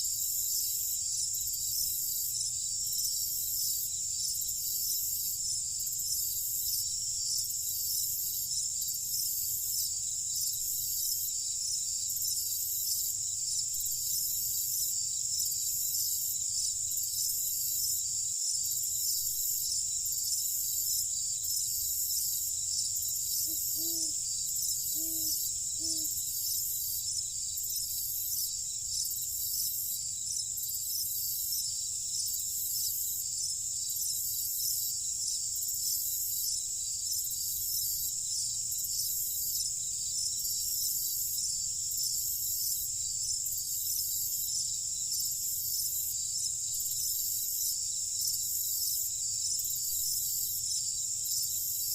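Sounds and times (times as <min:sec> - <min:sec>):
crickets chirping: 0:00.0 - 0:51.9
short low animal calls: 0:23.4 - 0:24.2.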